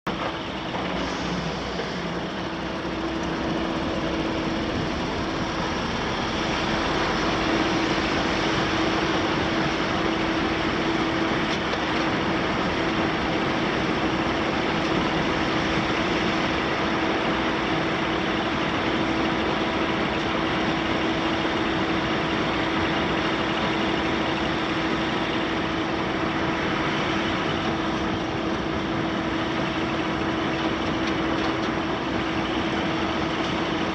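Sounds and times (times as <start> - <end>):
constant whine: 0.0 - 33.9
diesel engine running: 0.0 - 33.9.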